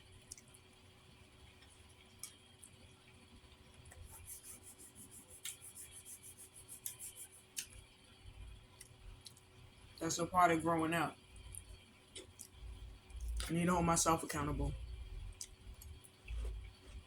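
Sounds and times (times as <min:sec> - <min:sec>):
faint chewing: 0:11.4 - 0:13.5, 0:15.3 - 0:17.0.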